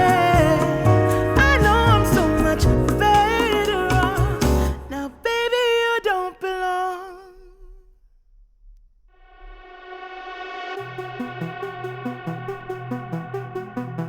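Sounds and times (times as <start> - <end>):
pop song with sung vocals: 0.0 - 7.8
sustained synth chord: 10.8 - 14.0.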